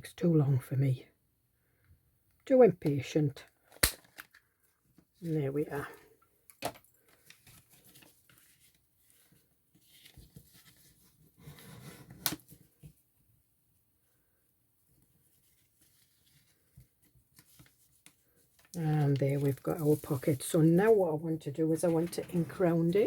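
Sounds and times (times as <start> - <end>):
paper and card rustling: 6.6 - 12.8, 15.3 - 21.0, 21.7 - 23.0.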